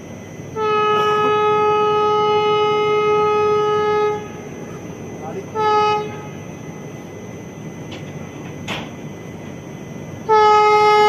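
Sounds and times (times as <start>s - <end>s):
train horn blast: 0.5s - 4.8s, 5.5s - 6.5s, 10.2s - 11.0s.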